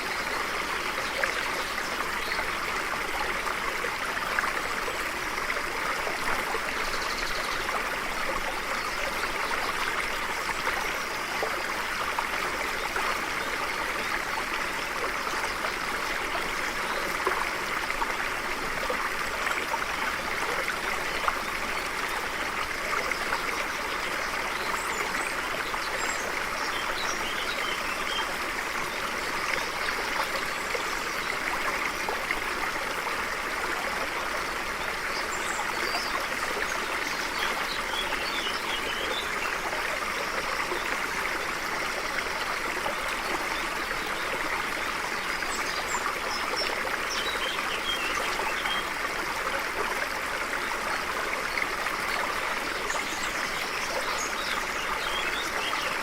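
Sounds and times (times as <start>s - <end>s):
stream running over rocks: 0.0s - 56.0s.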